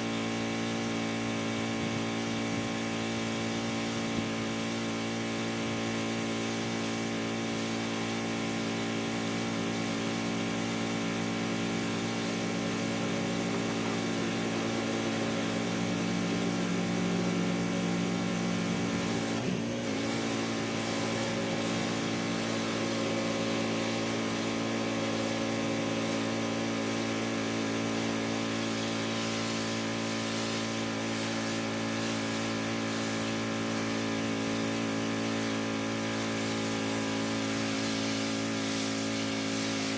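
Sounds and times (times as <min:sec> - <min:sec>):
hiss of water spray: 0:00.0 - 0:39.9
pressure washer motor drone: 0:00.0 - 0:39.9.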